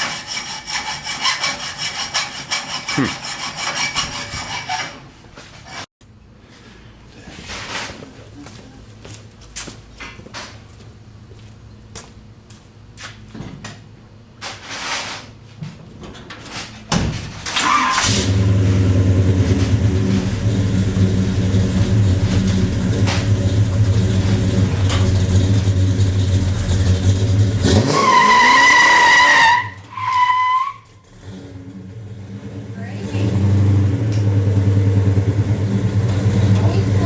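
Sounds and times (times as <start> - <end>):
car engine revving: 17.9 - 29.7, 31.0 - 37.0
tyres squealing: 27.7 - 31.0.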